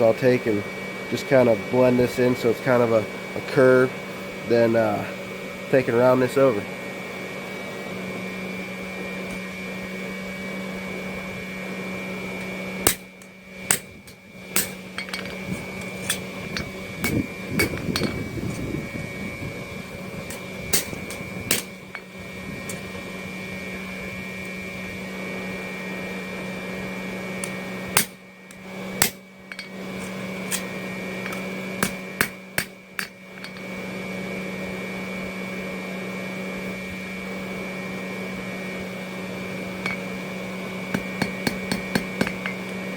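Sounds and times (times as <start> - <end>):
steady motor hum: 0.0 - 42.9
hammer ringing on anvil: 20.3 - 22.1.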